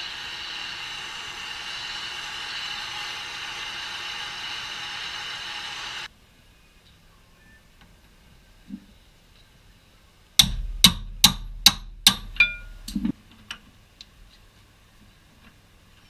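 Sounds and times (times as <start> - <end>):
hammer striking metal: 10.4 - 13.1.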